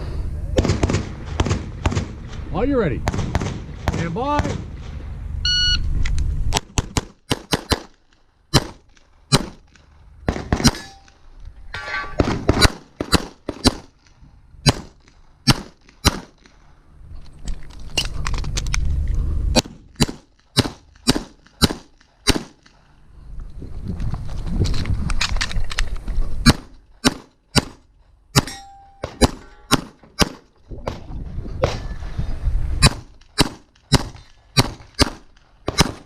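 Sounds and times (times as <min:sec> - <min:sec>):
pistol shots: 0:00.6 - 0:02.2, 0:03.0 - 0:04.7, 0:06.5 - 0:09.7, 0:10.3 - 0:11.1, 0:12.2 - 0:13.9, 0:14.6 - 0:16.5, 0:19.6 - 0:22.7, 0:26.4 - 0:27.8, 0:28.4 - 0:31.0, 0:32.8 - 0:36.0
shot timer beep: 0:05.5 - 0:05.8.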